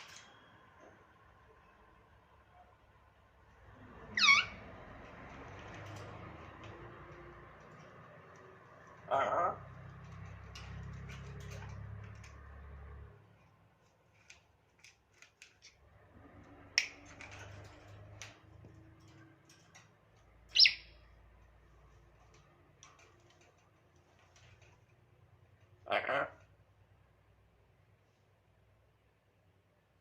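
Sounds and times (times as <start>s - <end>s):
parrot squawking: 4.1s - 4.6s, 9.0s - 9.7s, 20.5s - 21.0s, 25.8s - 26.4s.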